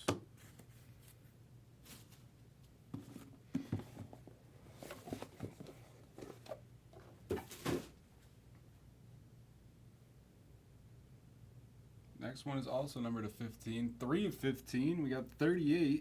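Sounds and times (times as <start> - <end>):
cards and packaging rustling: 3.0 - 7.9.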